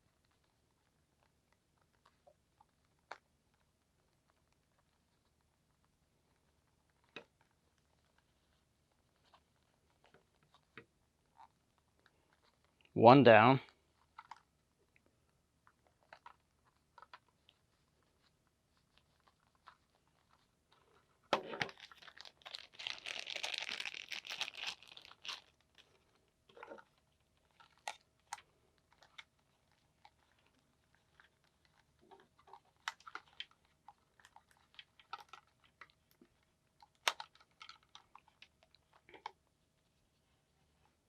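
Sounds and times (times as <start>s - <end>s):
plastic crinkling and crunching: 16.0s - 39.4s.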